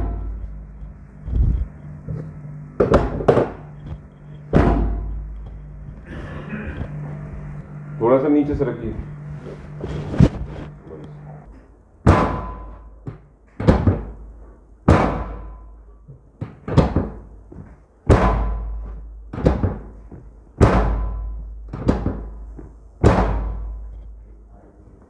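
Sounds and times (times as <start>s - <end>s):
heavy ringing thuds: 0.0s - 13.1s, 18.1s - 24.0s.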